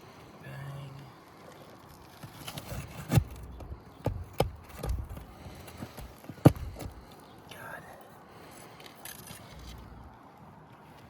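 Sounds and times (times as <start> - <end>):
scraping on shingles: 1.5 - 7.3
sharp knocks and clicks on shingles: 2.1 - 7.4.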